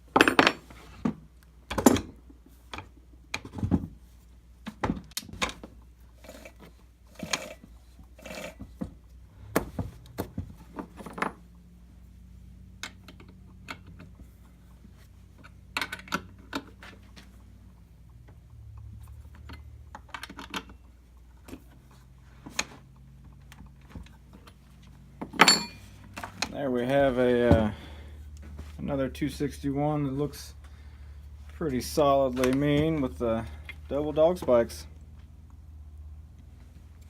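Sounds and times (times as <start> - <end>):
tools and metal parts rattling: 0.1 - 0.8, 10.5 - 11.4, 23.2 - 26.6.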